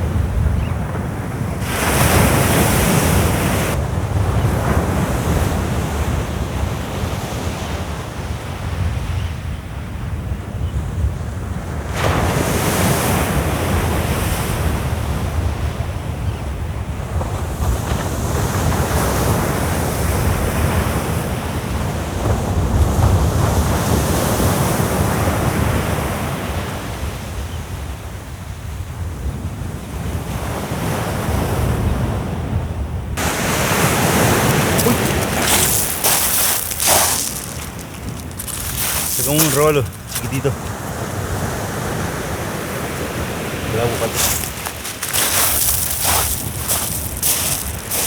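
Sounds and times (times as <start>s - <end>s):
surf breaking on a beach: 33.2s - 48.0s.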